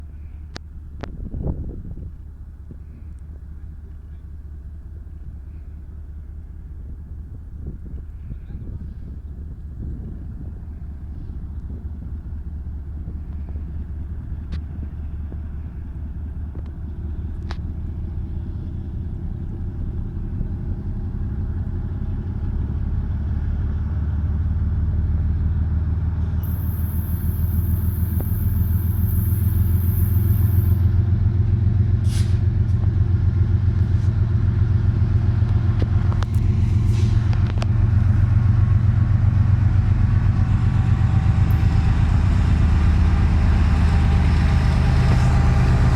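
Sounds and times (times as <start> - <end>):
diesel locomotive engine rumble: 0.0 - 45.9
brief high hiss: 26.4 - 31.0, 32.0 - 32.4.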